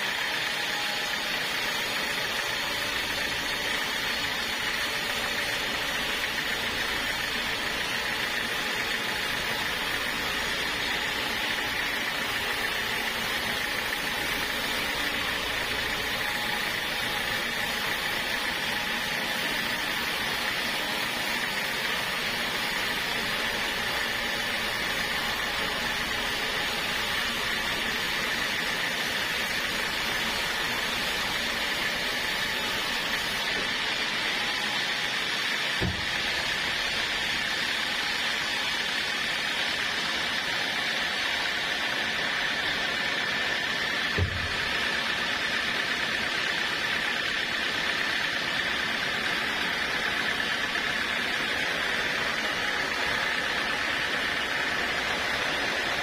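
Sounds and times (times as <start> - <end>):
sawmill machine drone: 0.0 - 56.0
low thump: 35.8 - 36.2.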